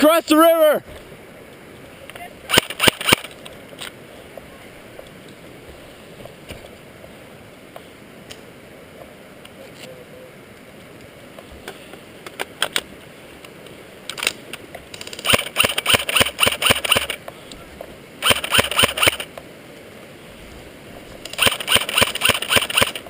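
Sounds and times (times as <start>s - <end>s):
sharp clicks: 2.5s - 3.9s, 14.1s - 17.2s, 18.2s - 19.4s, 21.2s - 23.0s.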